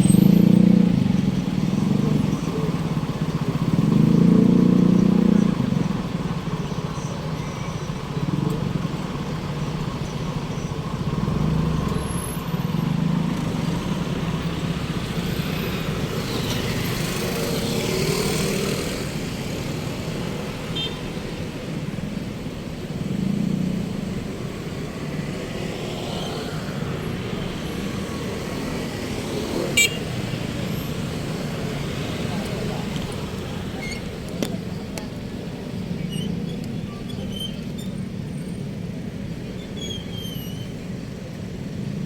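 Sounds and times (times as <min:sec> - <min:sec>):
cars and motorcycles passing: 0:00.0 - 0:42.0
road traffic engines: 0:00.0 - 0:42.0.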